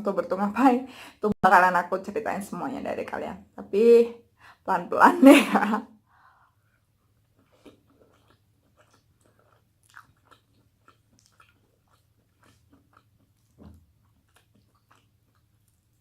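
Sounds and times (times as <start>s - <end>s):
person chewing food: 6.2s - 16.0s.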